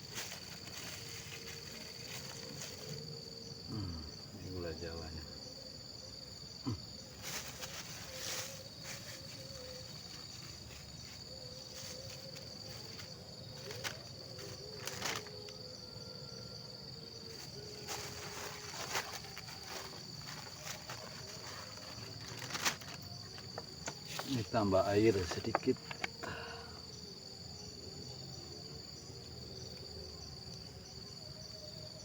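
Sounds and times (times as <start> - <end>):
high-pitched insects trilling: 0.0 - 32.0
cooking gear clicks and knocks: 25.4 - 26.2.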